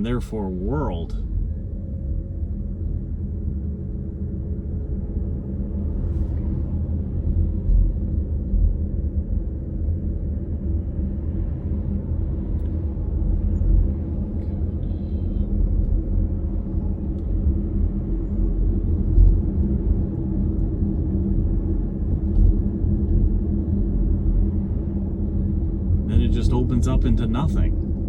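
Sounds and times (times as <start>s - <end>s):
car engine rumble from inside: 12.3s - 28.0s.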